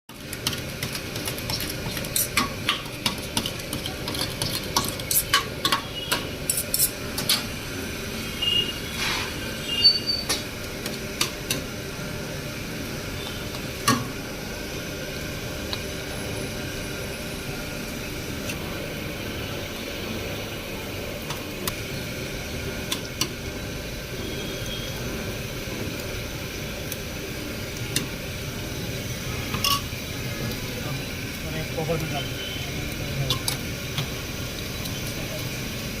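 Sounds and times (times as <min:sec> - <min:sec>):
metal utensils clinking and scraping: 0:00.4 - 0:07.5, 0:29.5 - 0:30.0.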